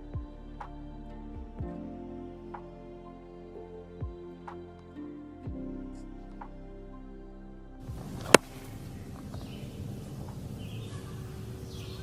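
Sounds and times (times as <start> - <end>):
calm ambient music: 0.0 - 12.0
outdoor background noise: 7.8 - 12.0.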